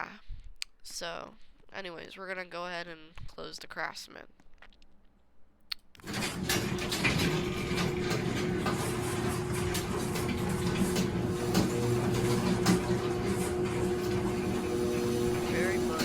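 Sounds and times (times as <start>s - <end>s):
garage door opener motor humming: 6.0s - 16.0s.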